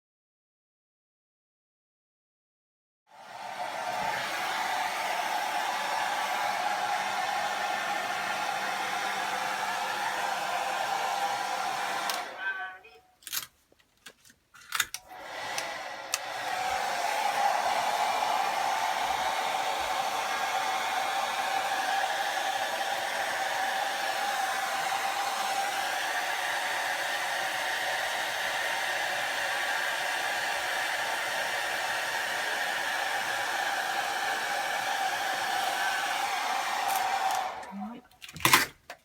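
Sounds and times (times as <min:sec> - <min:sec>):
hair dryer running: 0:03.1 - 0:12.8, 0:15.0 - 0:38.0.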